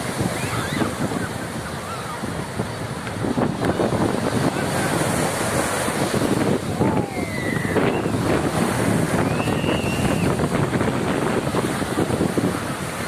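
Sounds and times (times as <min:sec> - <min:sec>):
waves washing on beach: 0:00.0 - 0:13.0
wind buffeting microphone: 0:00.0 - 0:13.0
short high calls of people: 0:06.8 - 0:08.1.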